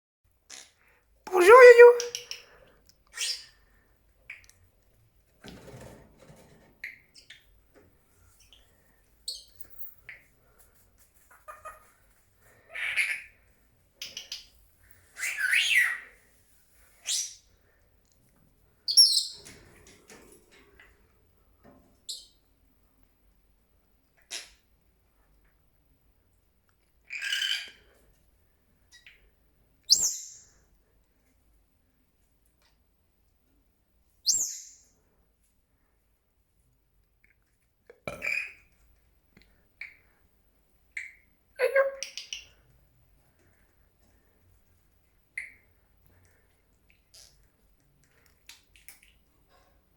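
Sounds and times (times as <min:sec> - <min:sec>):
parrot harsh calls: 0:01.3 - 0:02.2
parrot calls and squawks: 0:01.3 - 0:02.4, 0:11.2 - 0:12.0, 0:12.6 - 0:13.4, 0:15.2 - 0:16.1, 0:27.0 - 0:27.8, 0:38.1 - 0:38.7.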